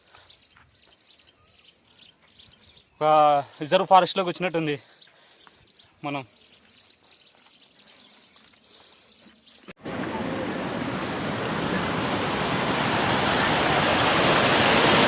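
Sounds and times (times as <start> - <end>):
waterfall rushing: 9.8 - 15.0.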